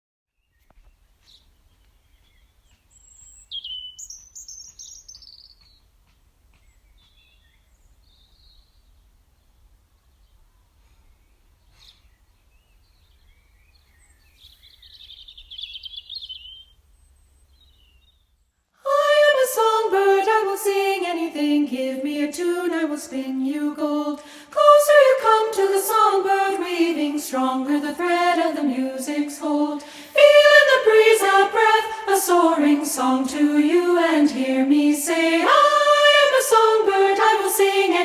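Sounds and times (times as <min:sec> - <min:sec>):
birds chirping: 0:01.4 - 0:05.9, 0:12.0 - 0:18.4
women's choir singing: 0:18.8 - 0:38.0.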